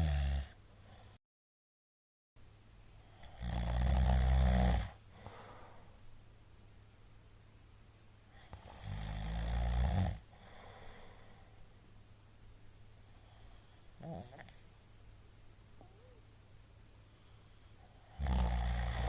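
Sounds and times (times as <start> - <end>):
man snoring loudly: 0.0 - 0.6, 3.1 - 5.0, 8.6 - 10.3, 14.0 - 14.5, 18.0 - 19.0
quiet breathing: 0.6 - 1.2, 4.8 - 6.2, 8.2 - 9.4, 10.2 - 12.0, 12.9 - 14.9, 15.8 - 19.0.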